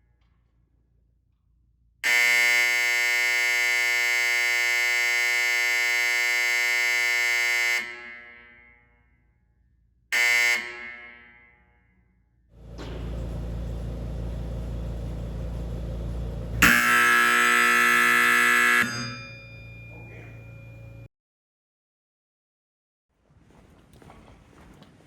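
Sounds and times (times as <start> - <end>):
fire alarm horn buzzing: 2.0 - 8.8, 10.2 - 11.7, 12.6 - 21.1.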